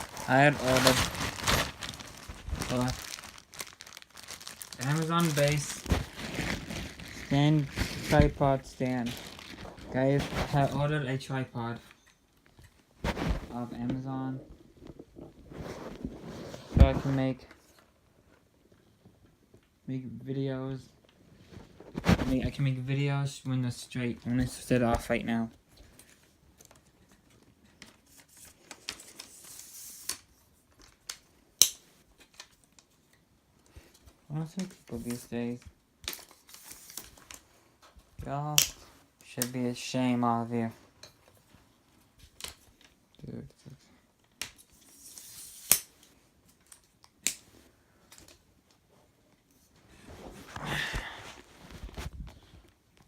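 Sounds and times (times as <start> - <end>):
packaging clicks and rustling: 0.0 - 10.9.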